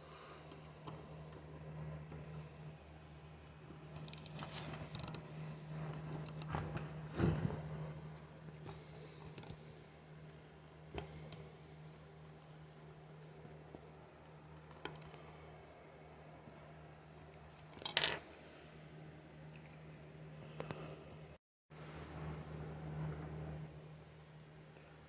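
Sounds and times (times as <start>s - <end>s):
metal clinks and scrapes: 4.0s - 5.2s.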